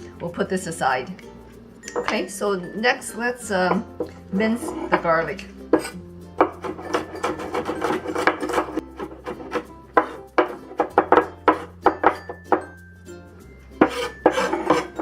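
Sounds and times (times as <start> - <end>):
background music: 0.0 - 15.0
knife chopping on cutting board: 5.8 - 12.7, 13.8 - 15.0.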